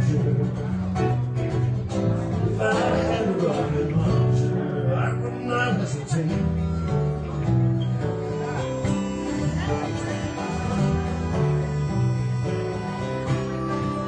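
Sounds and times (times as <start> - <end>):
instrumental band with guitar: 0.0 - 14.0.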